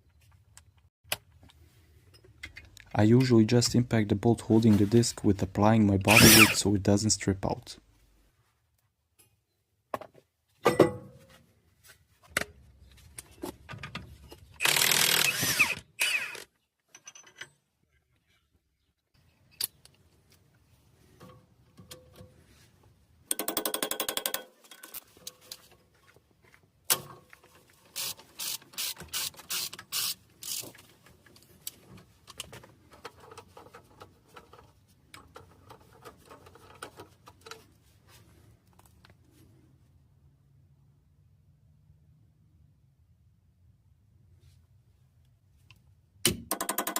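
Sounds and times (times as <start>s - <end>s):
fast rattling power tool: 6.1s - 6.6s, 14.6s - 16.4s
ratchet clicking: 28.0s - 30.7s.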